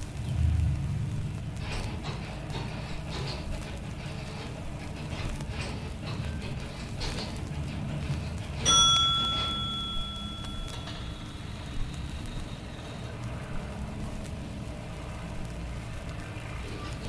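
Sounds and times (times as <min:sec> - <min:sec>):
steady low rumble: 0:00.0 - 0:17.0
bell ringing: 0:08.6 - 0:11.6.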